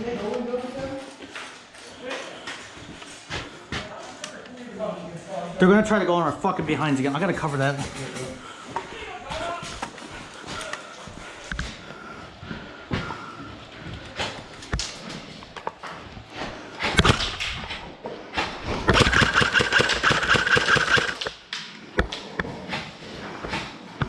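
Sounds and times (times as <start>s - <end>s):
airsoft gun shots: 18.9s - 21.3s
full-auto burst rattle: 18.9s - 21.3s.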